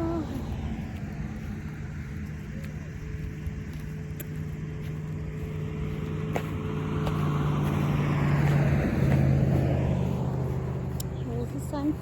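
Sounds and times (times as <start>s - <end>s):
motor engine humming: 0.0s - 12.0s.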